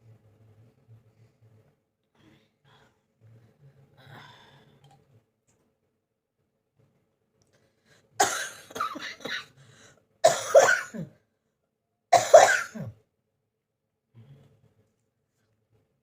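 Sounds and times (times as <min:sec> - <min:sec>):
person coughing hard: 0:08.2 - 0:09.6, 0:10.2 - 0:11.2, 0:12.1 - 0:13.0.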